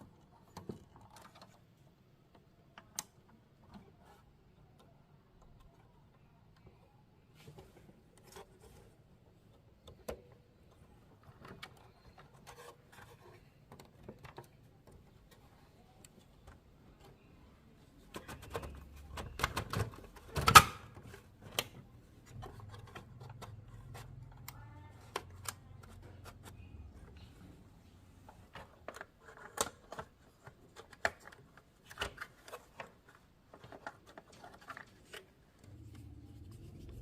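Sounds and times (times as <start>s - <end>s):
faint low hum: 21.0s - 37.0s.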